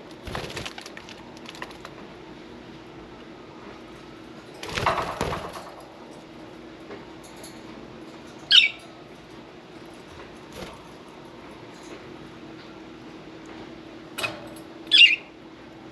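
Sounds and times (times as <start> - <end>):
budgerigar flapping wings: 0.1 - 2.0
sharp budgie chirp: 14.9 - 15.3.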